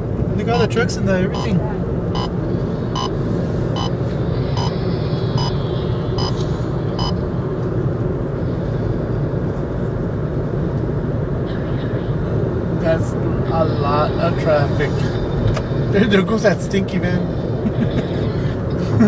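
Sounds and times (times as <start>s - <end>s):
car road and engine noise: 0.0s - 19.0s
regular ticking: 0.5s - 3.2s, 3.8s - 4.0s.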